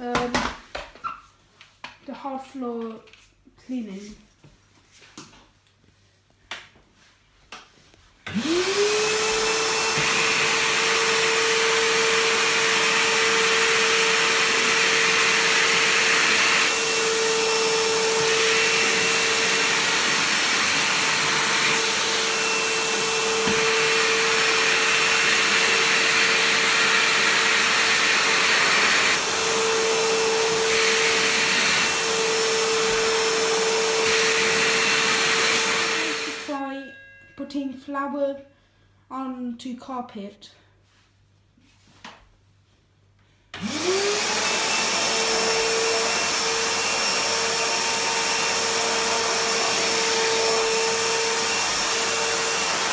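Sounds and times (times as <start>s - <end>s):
rush of air vacuuming floor: 8.3s - 36.5s, 43.6s - 52.9s
wet dry vacuum motor running: 8.3s - 36.5s, 43.6s - 52.9s.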